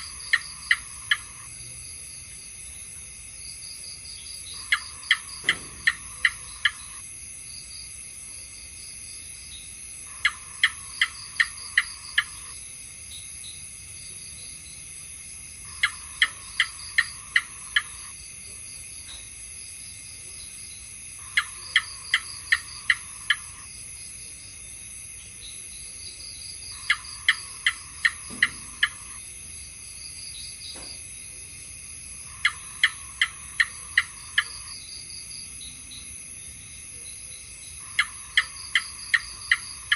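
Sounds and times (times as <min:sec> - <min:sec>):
gecko chirping: 0:00.0 - 0:01.5, 0:04.2 - 0:07.0, 0:10.1 - 0:12.6, 0:15.6 - 0:18.2, 0:21.2 - 0:23.7, 0:26.7 - 0:29.2, 0:32.2 - 0:34.9, 0:37.8 - 0:39.9
high insect hum: 0:00.0 - 0:39.9.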